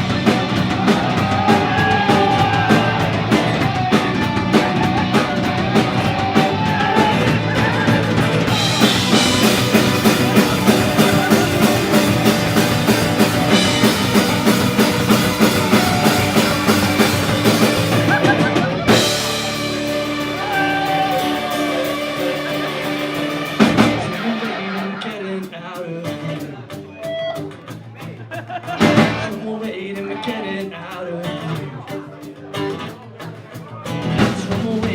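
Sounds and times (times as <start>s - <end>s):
ringing bending guitar notes: 0.0s - 25.0s
rock band playing live: 0.0s - 34.9s.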